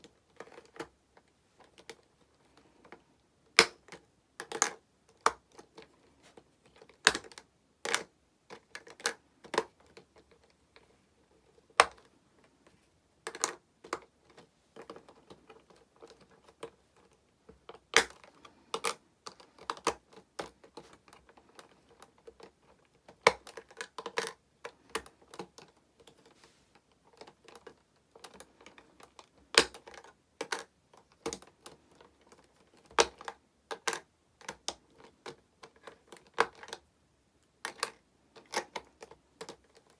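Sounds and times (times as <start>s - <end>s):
hard plastic clicking and tapping: 13.2s - 36.9s.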